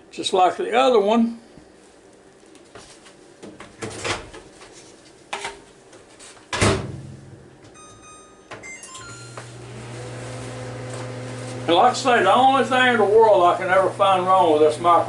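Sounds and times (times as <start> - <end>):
microwave oven humming: 6.6 - 15.0
short keypad beeps: 7.8 - 9.5.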